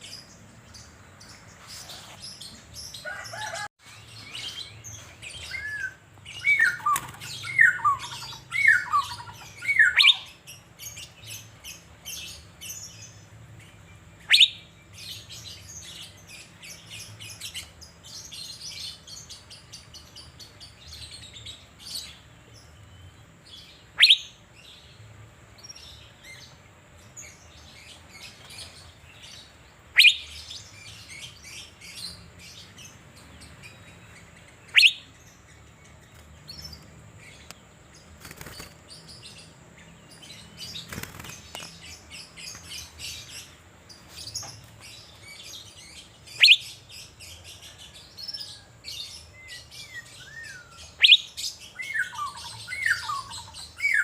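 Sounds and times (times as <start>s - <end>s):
soft high bird chirps: 0.0s - 24.9s, 27.2s - 54.0s
bird whistling loudly: 5.6s - 10.3s, 30.0s - 30.3s, 34.7s - 35.1s.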